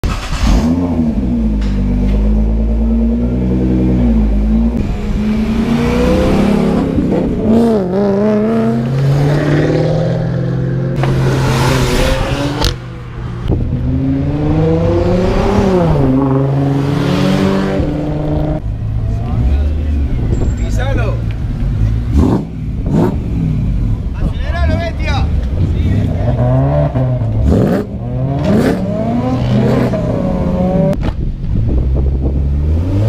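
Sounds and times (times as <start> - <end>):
sports car engines revving: 0.0 - 33.0.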